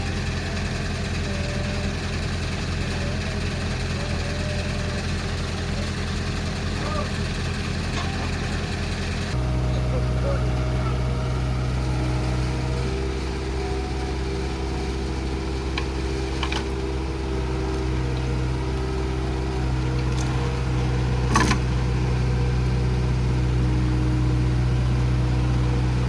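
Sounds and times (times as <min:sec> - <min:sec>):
diesel engine humming: 0:00.0 - 0:26.0.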